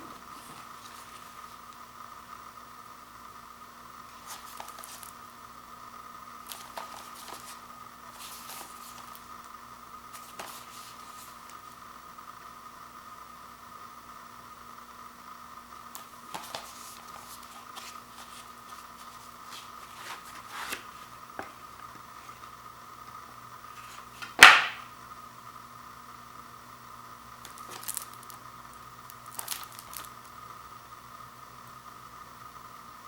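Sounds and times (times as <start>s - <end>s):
plastic wrapping crinkling: 4.1s - 5.2s, 6.4s - 9.4s, 10.1s - 11.6s, 16.0s - 21.5s, 27.4s - 30.4s.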